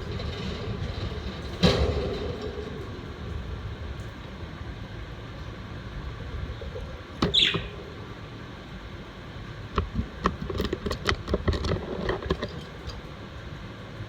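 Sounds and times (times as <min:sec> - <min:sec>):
low room rumble: 0:00.0 - 0:14.0
budgerigar chirp: 0:07.2 - 0:07.8.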